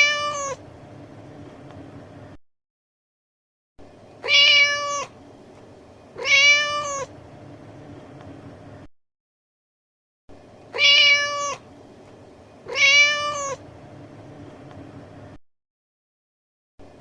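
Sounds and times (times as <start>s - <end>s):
cat meowing: 0.0s - 0.6s, 4.2s - 5.2s, 6.2s - 7.1s, 10.7s - 11.6s, 12.6s - 13.6s.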